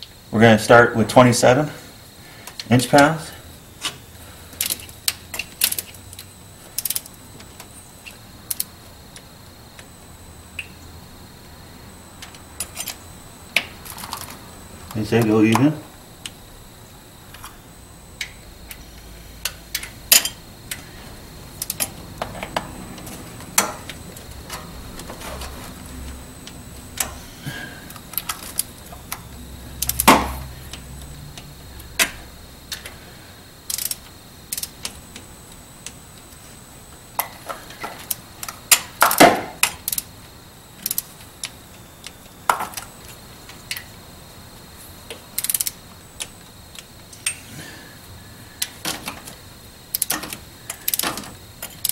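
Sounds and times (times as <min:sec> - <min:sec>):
torque wrench metallic clicks: 0:21.6 - 0:21.9, 0:29.8 - 0:30.8, 0:33.7 - 0:35.0, 0:38.0 - 0:40.1, 0:40.8 - 0:41.1, 0:45.4 - 0:46.3, 0:49.9 - 0:51.9.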